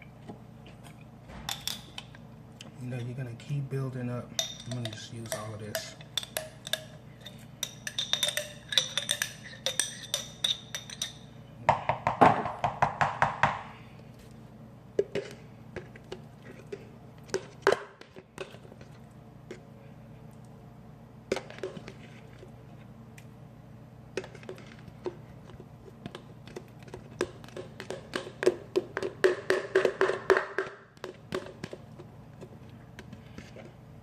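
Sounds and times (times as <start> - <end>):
spoon clinking against a bowl: 4.3 - 11.4.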